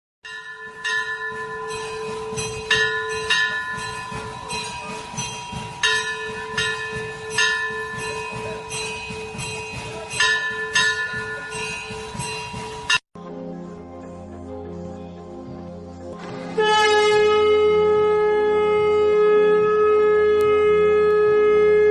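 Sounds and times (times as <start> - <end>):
brass hand bell ringing: 0.2 - 13.0.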